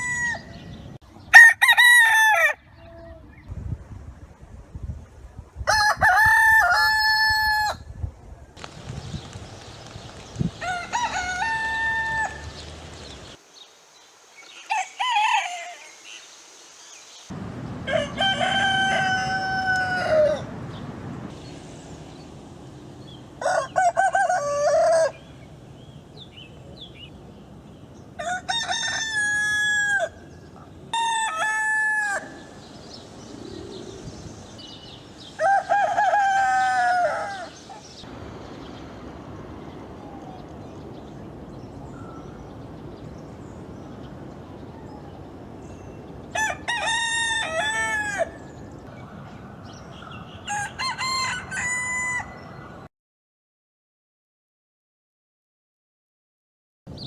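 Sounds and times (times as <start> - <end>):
rooster crowing: 0.0 - 0.6, 1.3 - 2.6, 5.7 - 7.8, 10.6 - 12.6, 14.6 - 16.0, 17.9 - 20.5, 23.4 - 25.2, 28.2 - 30.2, 30.9 - 32.5, 35.4 - 37.6, 46.3 - 48.5, 50.4 - 52.9.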